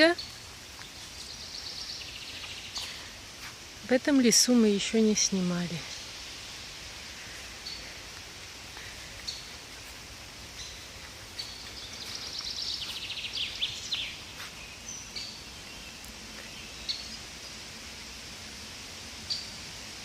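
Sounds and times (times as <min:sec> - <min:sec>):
songbirds singing: 0:00.0 - 0:18.2, 0:19.1 - 0:19.9
background hiss: 0:00.0 - 0:20.0.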